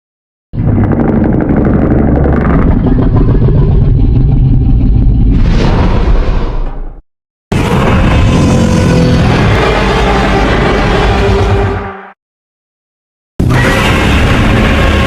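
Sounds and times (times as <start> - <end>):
monster roar: 0.6 - 6.6, 7.5 - 11.8, 13.4 - 15.0.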